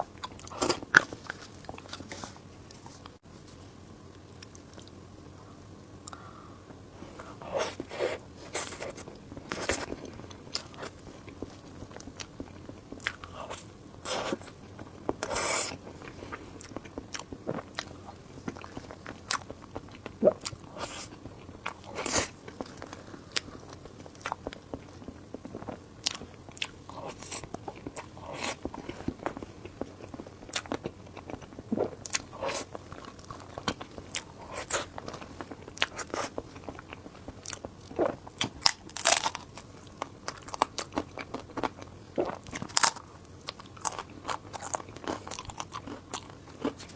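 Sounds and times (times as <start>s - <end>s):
person chewing with crunches: 0.0s - 3.2s, 7.0s - 46.9s.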